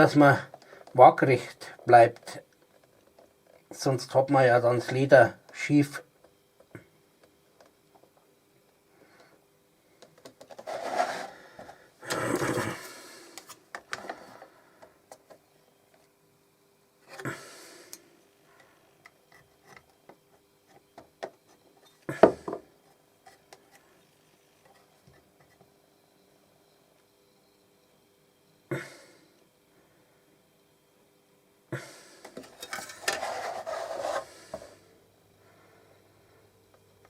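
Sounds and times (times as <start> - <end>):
faint steady hum: 0.0 - 37.0
blade scraping through leather: 10.6 - 11.4.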